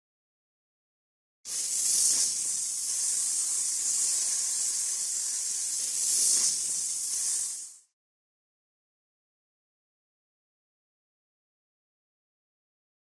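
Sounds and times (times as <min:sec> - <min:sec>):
compressed air spray hiss: 0:01.5 - 0:08.0.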